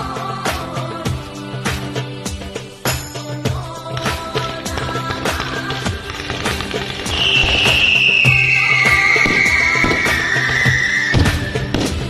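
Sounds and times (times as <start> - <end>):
loud music: 0.0 - 12.0
fireworks cracking: 4.8 - 12.0.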